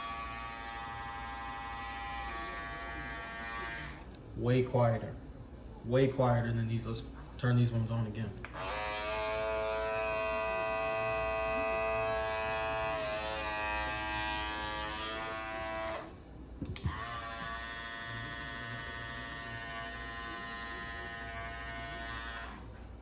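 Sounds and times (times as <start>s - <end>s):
hair clipper buzzing: 0.0s - 4.1s, 8.5s - 16.2s, 16.8s - 22.6s
quieter hair clipper buzzing: 0.0s - 4.1s, 8.5s - 16.2s, 16.8s - 22.7s.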